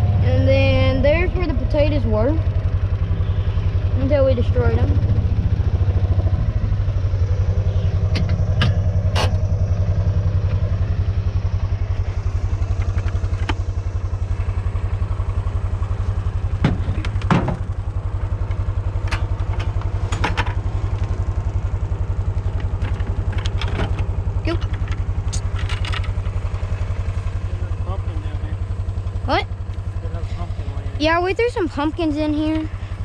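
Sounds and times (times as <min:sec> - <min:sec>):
utility vehicle engine idling: 0:00.0 - 0:33.0
sharp knocks and clicks: 0:08.1 - 0:09.5, 0:16.6 - 0:17.7.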